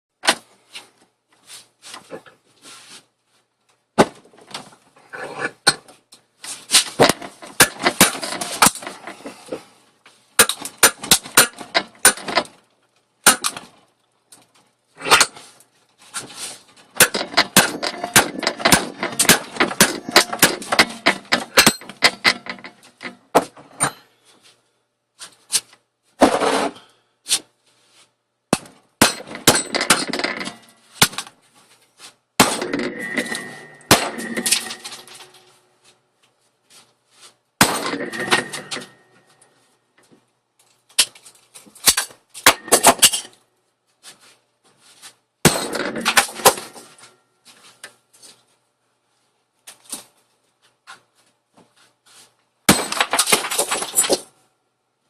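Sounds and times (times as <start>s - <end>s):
breaking plastic crunching and rattling: 6.9s - 9.2s, 10.4s - 15.5s, 16.8s - 23.2s, 28.6s - 31.4s, 32.4s - 35.6s, 45.4s - 47.1s, 52.7s - 54.3s
hard blows smashing a phone: 7.0s - 9.1s, 10.4s - 12.5s, 13.2s - 13.7s, 17.0s - 22.7s, 28.5s - 31.2s, 32.4s - 35.4s, 37.6s - 39.0s, 41.8s - 43.2s, 45.4s - 46.9s, 52.7s - 54.3s.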